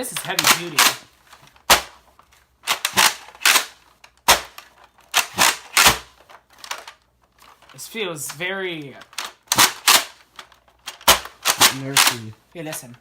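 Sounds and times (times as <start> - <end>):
plastic toy blaster clacks: 0.2 - 1.0, 2.6 - 7.0, 9.0 - 12.3.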